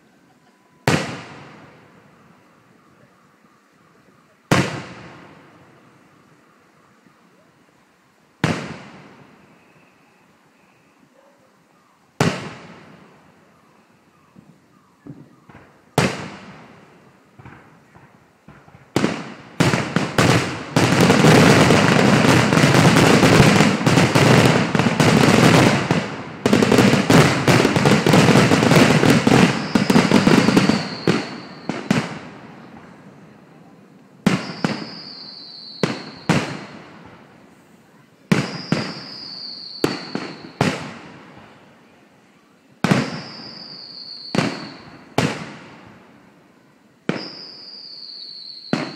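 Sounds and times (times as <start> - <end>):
fireworks crackling: 0.0 - 3.2, 4.2 - 6.3, 7.6 - 9.7, 12.2 - 13.4, 15.0 - 41.9, 42.8 - 48.9
fireworks bursting with sharp bangs: 0.7 - 3.1, 4.2 - 6.1, 8.4 - 9.9, 12.2 - 13.4, 14.4 - 41.9, 42.8 - 48.9
firework whistle: 8.4 - 11.2, 19.0 - 33.0, 34.3 - 36.9, 38.3 - 40.9, 42.9 - 45.4, 47.1 - 48.9.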